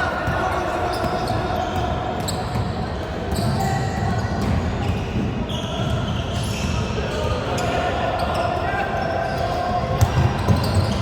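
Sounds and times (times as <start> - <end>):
gym hall noise: 0.0 - 11.0
basketball bouncing on court: 10.0 - 11.0.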